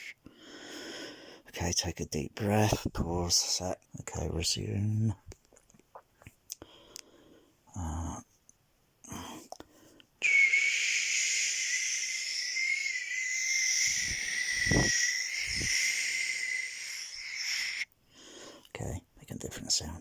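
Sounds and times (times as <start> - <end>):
person whistling a long note: 10.2 - 17.8.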